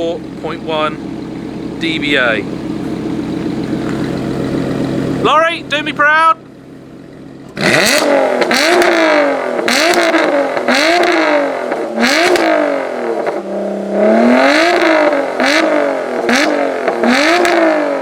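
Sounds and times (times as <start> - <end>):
car engine revving: 0.0 - 18.0.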